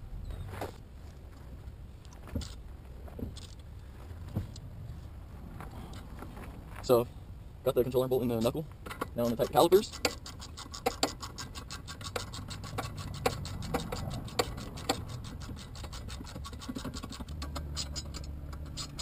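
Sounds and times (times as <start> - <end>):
ratchet wrench clicking: 8.9 - 19.0.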